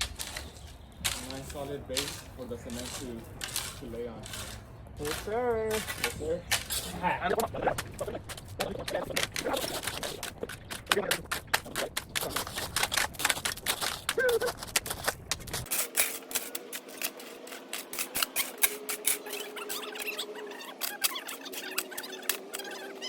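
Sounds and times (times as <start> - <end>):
gravel being raked and shovelled: 0.0 - 23.0.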